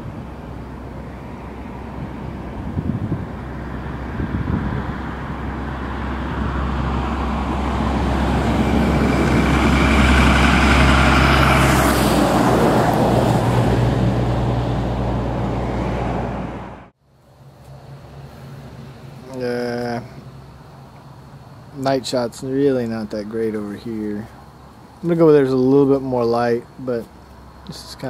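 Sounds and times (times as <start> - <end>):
vehicle passing by: 0.0 - 16.9.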